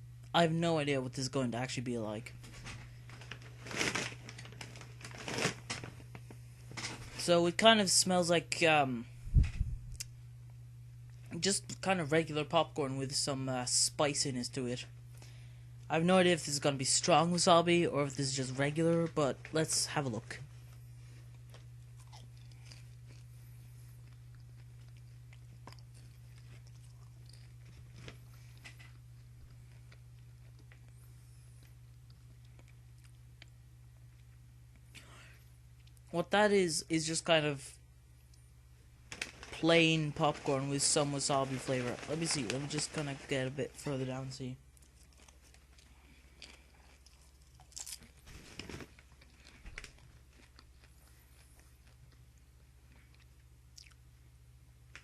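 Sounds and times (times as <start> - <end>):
low electrical hum: 0.0 - 55.0
popcorn being chewed: 2.5 - 7.3, 17.4 - 36.1, 38.2 - 54.2.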